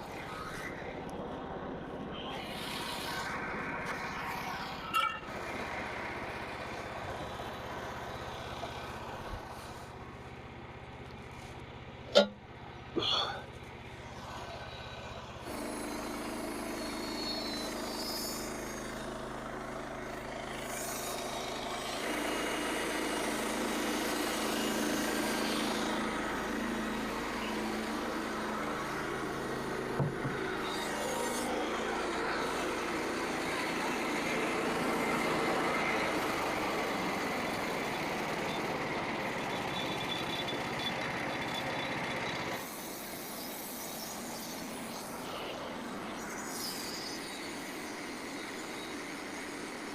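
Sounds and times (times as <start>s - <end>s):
bandsaw mill sawing log: 14.0s - 49.9s.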